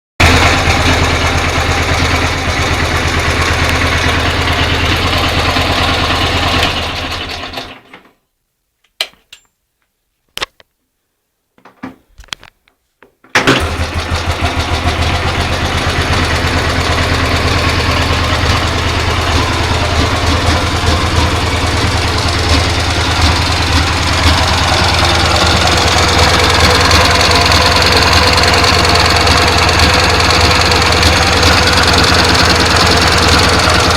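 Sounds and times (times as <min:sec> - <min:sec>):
motorcycle engine knocking: 0:00.2 - 0:07.0, 0:13.7 - 0:33.9.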